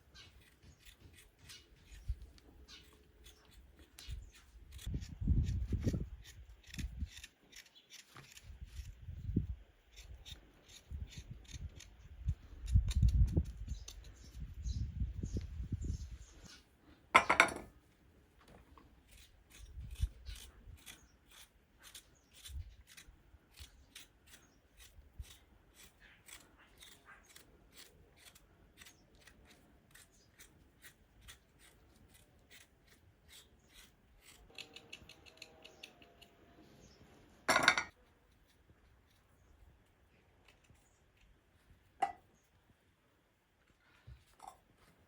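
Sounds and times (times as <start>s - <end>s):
scissors snipping: 19.2s - 36.3s.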